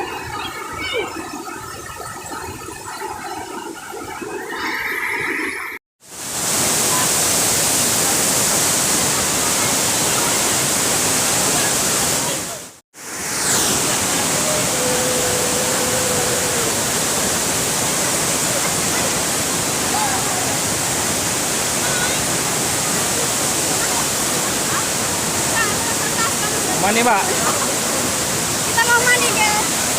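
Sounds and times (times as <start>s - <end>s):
waterfall rushing: 6.1s - 29.9s.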